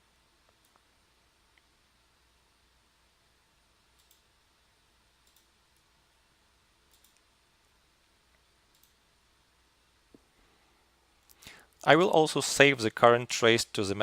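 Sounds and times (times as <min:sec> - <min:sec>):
instrument control clicks: 0:04.0 - 0:04.3, 0:05.2 - 0:05.9, 0:06.9 - 0:07.3, 0:08.7 - 0:09.0.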